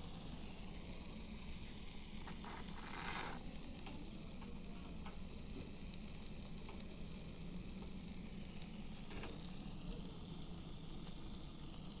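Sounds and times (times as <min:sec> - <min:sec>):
food sizzling on a grill: 0:00.0 - 0:12.0
small crackles: 0:00.0 - 0:12.0.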